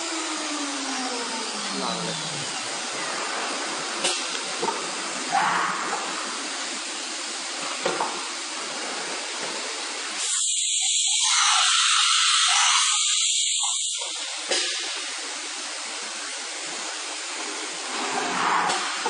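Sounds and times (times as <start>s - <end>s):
cnc router hissing: 0.0s - 3.3s, 10.2s - 14.2s.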